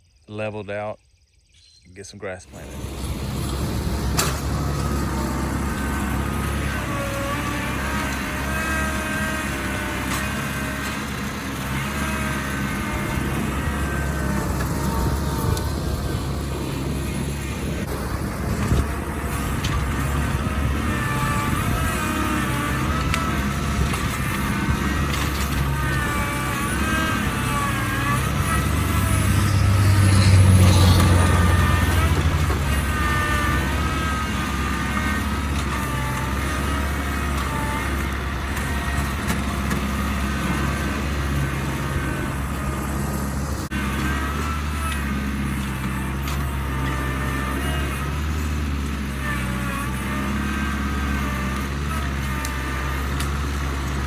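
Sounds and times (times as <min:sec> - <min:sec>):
tractor engine running: 0:02.3 - 0:54.0
wavering whine: 0:12.8 - 0:35.2.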